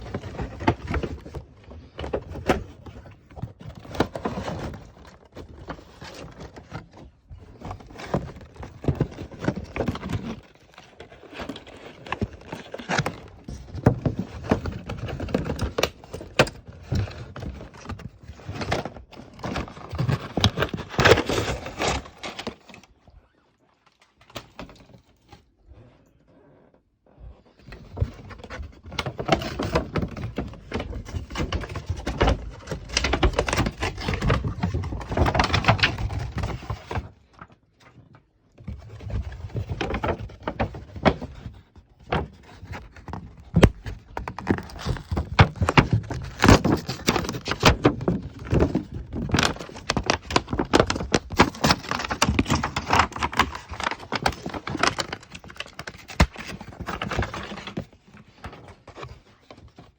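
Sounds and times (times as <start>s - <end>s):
packaging rustling and knocking: 0.0s - 22.9s, 38.6s - 59.9s.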